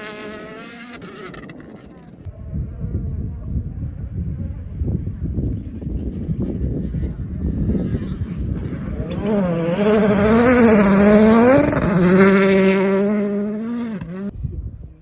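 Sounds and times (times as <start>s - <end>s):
rally car engine at full throttle: 0.0s - 2.3s, 5.4s - 14.3s.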